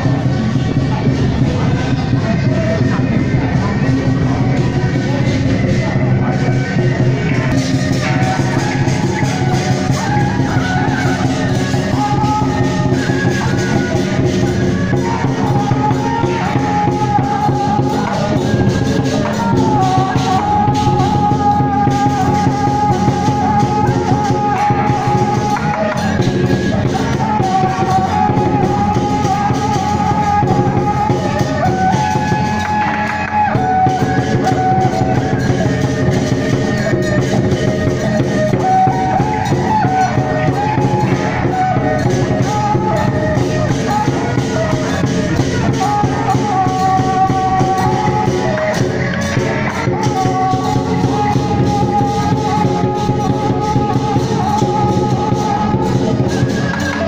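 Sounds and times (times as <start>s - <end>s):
drumming: 0.0s - 57.0s
gongs: 0.0s - 57.0s.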